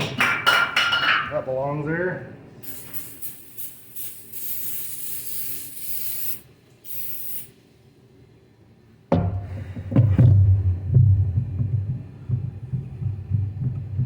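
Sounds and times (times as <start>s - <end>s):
aerosol spray hissing: 2.6s - 7.6s
loud low throbbing hum: 9.3s - 14.0s.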